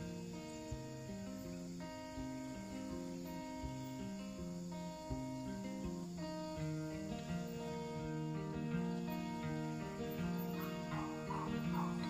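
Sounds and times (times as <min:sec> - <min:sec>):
instrumental music of plucked notes: 0:00.0 - 0:12.0.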